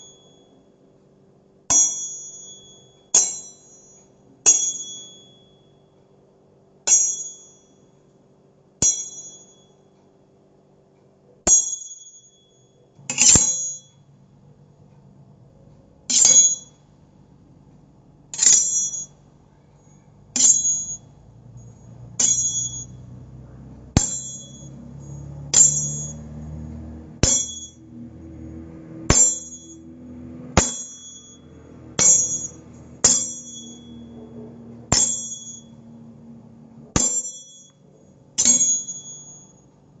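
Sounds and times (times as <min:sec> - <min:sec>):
metallic blade shing: 0:11.5 - 0:13.9, 0:16.1 - 0:16.7, 0:18.4 - 0:19.1, 0:20.4 - 0:23.3, 0:24.0 - 0:35.9, 0:36.9 - 0:37.8, 0:38.4 - 0:39.6
faint low drone: 0:19.5 - 0:37.0.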